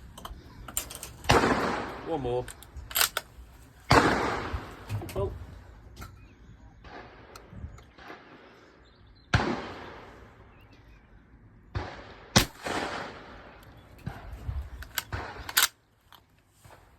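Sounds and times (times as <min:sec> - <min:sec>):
shotgun shots: 0:01.3 - 0:02.1, 0:03.9 - 0:04.9, 0:09.3 - 0:10.1, 0:11.7 - 0:14.2, 0:14.9 - 0:15.7.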